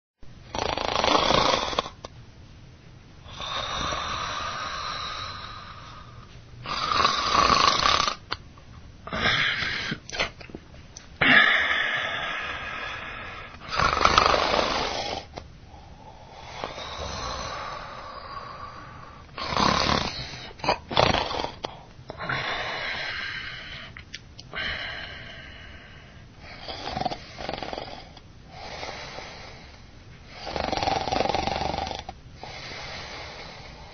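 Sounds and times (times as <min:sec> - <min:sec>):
baby snoring: 0:00.5 - 0:02.0, 0:03.3 - 0:08.3, 0:11.2 - 0:15.4, 0:16.1 - 0:23.2, 0:26.5 - 0:29.6, 0:30.3 - 0:33.9.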